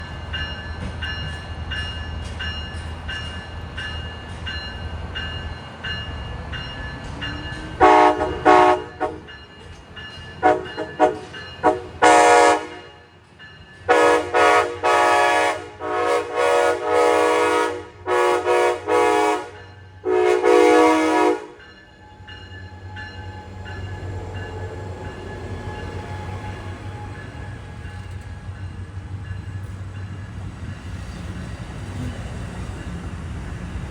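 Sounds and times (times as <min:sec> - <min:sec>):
diesel train rumble: 0:00.0 - 0:33.9
train air horn blasts: 0:07.8 - 0:09.3, 0:10.4 - 0:13.1, 0:13.9 - 0:21.6
steady ringing bell: 0:21.6 - 0:26.0.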